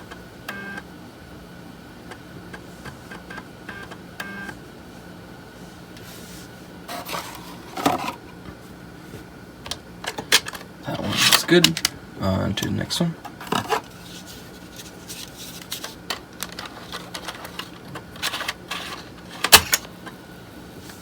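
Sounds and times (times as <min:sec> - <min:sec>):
floppy drive stepper chirps and clicks: 0:00.0 - 0:00.8, 0:02.5 - 0:04.6
steady low hum: 0:00.0 - 0:21.0.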